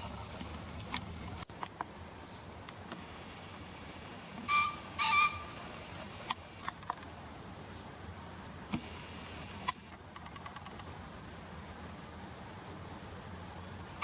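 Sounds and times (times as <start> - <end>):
pheasant crowing: 4.4 - 6.4.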